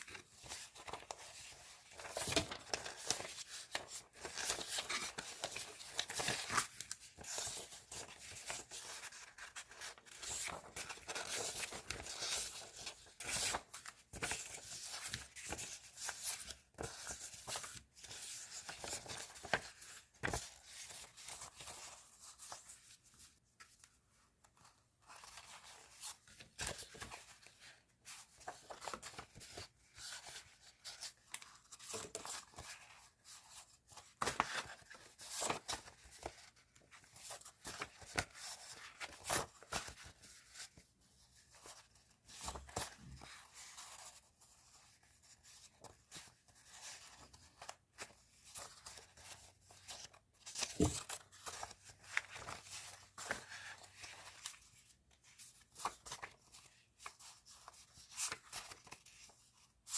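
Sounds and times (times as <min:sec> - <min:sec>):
paper rustling and crinkling: 0:00.0 - 0:59.9.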